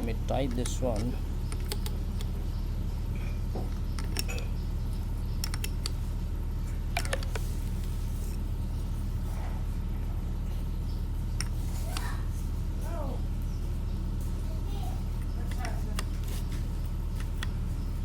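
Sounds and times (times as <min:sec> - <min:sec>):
steady low hum: 0:00.0 - 0:18.0
metallic clicks of tools: 0:00.5 - 0:02.3, 0:03.7 - 0:04.5, 0:05.4 - 0:06.0.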